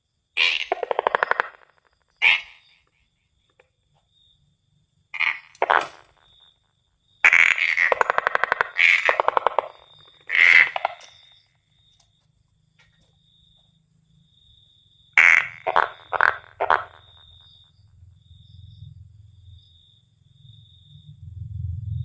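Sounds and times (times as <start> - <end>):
tree frog calling: 0.4 - 3.7, 5.1 - 6.6, 7.2 - 11.9, 15.0 - 18.4.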